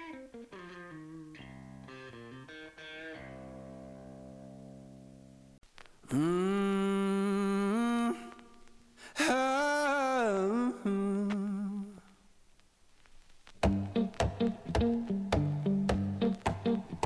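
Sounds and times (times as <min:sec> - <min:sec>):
person humming long notes: 0:06.1 - 0:08.6.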